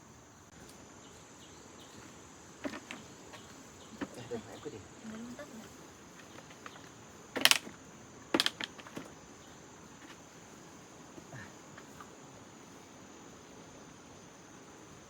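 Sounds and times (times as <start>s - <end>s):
sharp knocks and clicks: 7.4s - 9.1s.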